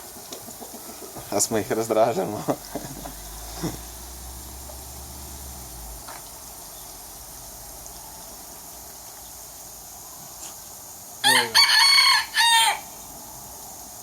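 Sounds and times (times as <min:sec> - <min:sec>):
low background hiss: 0:00.0 - 0:14.0
rooster crowing: 0:11.2 - 0:13.0.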